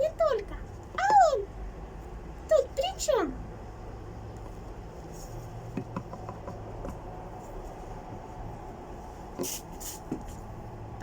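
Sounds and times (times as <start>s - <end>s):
steady low hum: 0.0s - 11.0s
short rustle: 7.3s - 10.5s.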